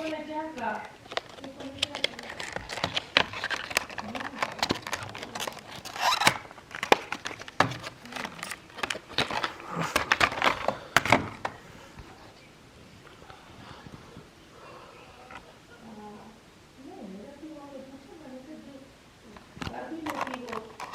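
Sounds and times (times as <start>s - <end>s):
packaging crinkling and tearing: 0.0s - 11.6s, 19.6s - 20.9s
small irregular clicks: 19.4s - 20.9s.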